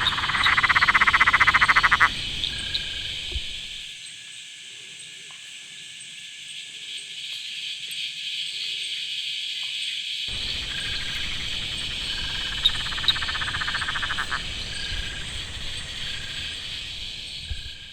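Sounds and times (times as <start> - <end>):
low rumbling noise: 0.0 - 3.8, 10.3 - 17.9
frog rapid pulsing call: 0.0 - 3.9, 10.3 - 17.9
frogs trilling chorus: 0.0 - 3.9, 10.3 - 17.9.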